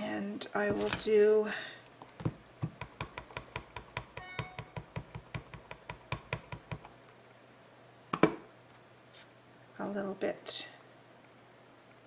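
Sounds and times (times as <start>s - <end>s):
ink pad tapping rubber stamp: 2.2s - 6.9s.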